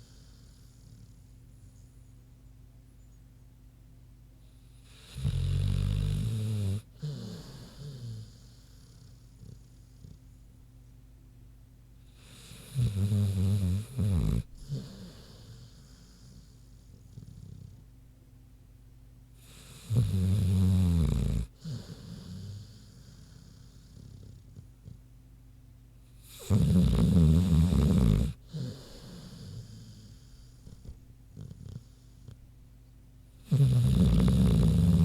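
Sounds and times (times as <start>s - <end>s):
dog snoring: 0.0s - 2.1s, 4.4s - 10.5s, 12.0s - 17.9s, 19.4s - 25.0s, 26.0s - 32.4s, 33.3s - 35.0s
dog breathing: 4.8s - 10.4s, 13.8s - 17.9s, 21.4s - 25.0s, 26.2s - 32.4s.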